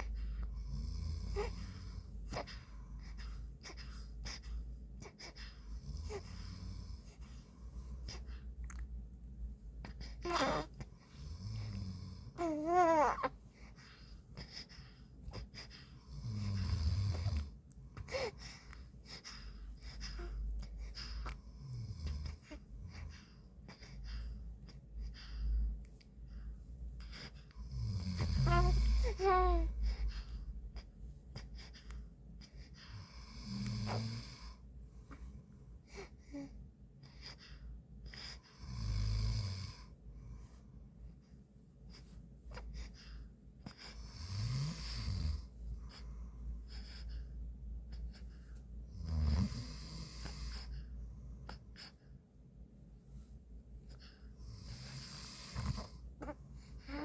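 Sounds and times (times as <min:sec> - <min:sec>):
baby high-pitched vocal sounds: 0:12.4 - 0:13.4
man snoring: 0:44.1 - 0:45.4, 0:48.9 - 0:50.2.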